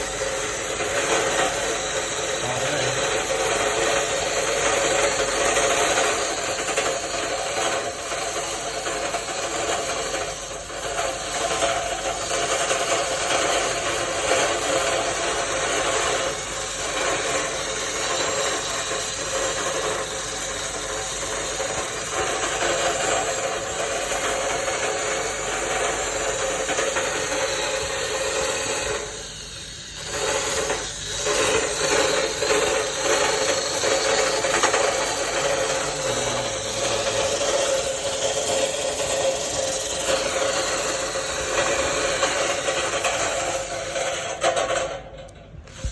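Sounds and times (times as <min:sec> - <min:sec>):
wire brush scrubbing metal: 0:21.6 - 0:44.6
electric drill motor whining: 0:25.2 - 0:44.3.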